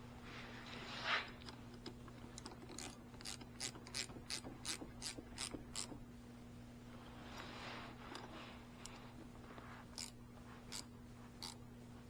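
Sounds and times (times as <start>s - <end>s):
ratchet wrench clicking: 10.0s - 11.6s.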